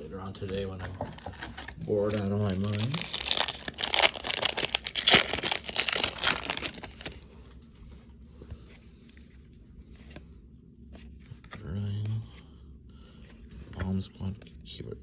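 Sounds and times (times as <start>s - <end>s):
plastic wrapper tearing and crinkling: 1.1s - 7.2s.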